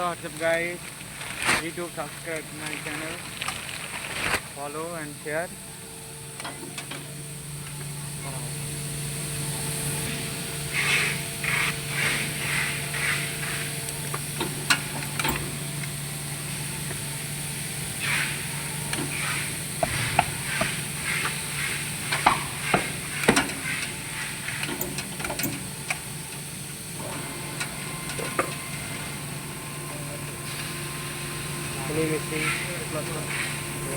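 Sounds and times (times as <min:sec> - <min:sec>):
steady low hum: 0:00.0 - 0:33.9
sharp knocks: 0:19.8 - 0:20.8.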